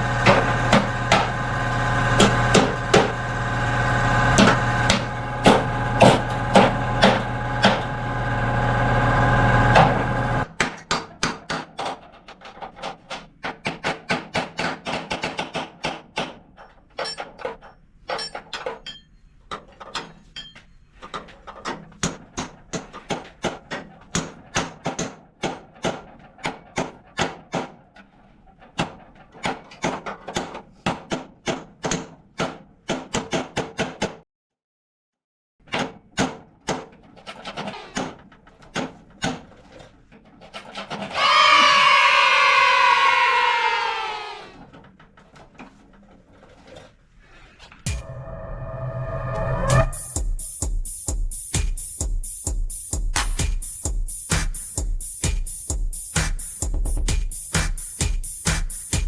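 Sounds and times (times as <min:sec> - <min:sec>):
hammer striking sheet steel: 0:00.0 - 0:01.5, 0:02.1 - 0:03.3, 0:04.3 - 0:07.9.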